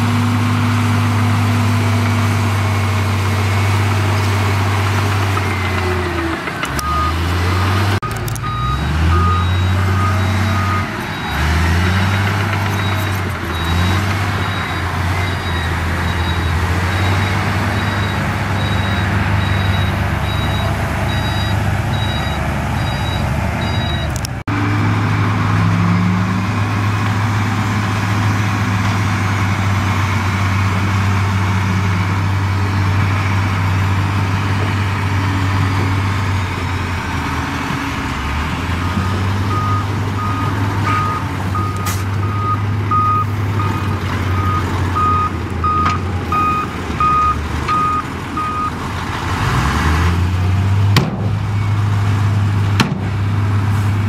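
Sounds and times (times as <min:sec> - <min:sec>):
heavy diesel engines revving: 0:00.0 - 0:54.0
reversing alarm beeping: 0:06.8 - 0:11.9, 0:12.7 - 0:24.2, 0:39.5 - 0:48.8.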